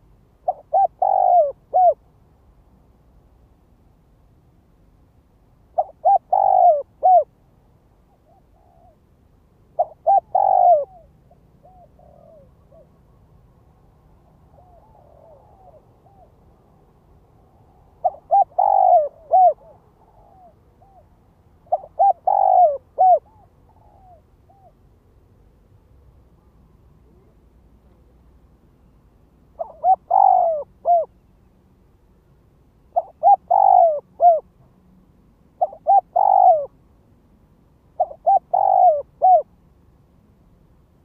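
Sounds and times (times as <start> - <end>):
dove cooing: 0.0 - 2.0, 5.7 - 7.3, 8.2 - 9.0, 9.8 - 13.0, 14.5 - 16.4, 18.0 - 24.8, 29.6 - 31.1, 32.9 - 34.5, 35.6 - 36.8, 38.0 - 39.5.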